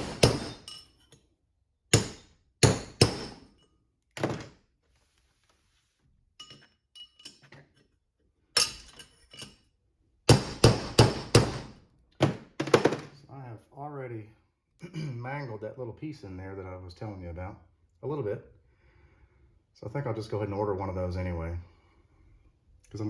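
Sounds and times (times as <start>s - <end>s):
hammer striking steel: 0.0s - 1.0s, 1.9s - 3.6s, 10.3s - 11.7s.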